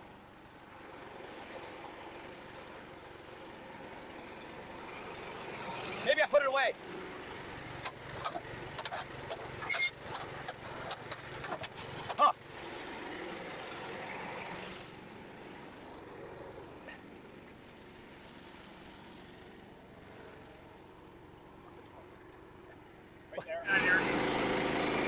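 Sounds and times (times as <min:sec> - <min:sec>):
sharp knocks and clatters: 0:07.8 - 0:12.3
engine running: 0:23.4 - 0:25.0.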